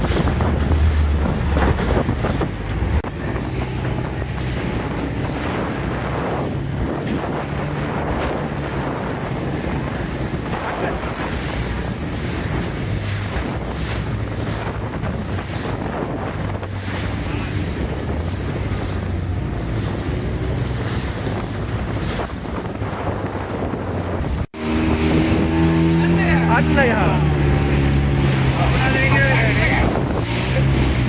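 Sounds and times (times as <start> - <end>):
boat engine droning: 0.0 - 31.0
water rushing past hull: 0.0 - 31.0
wind buffeting microphone: 0.0 - 31.0.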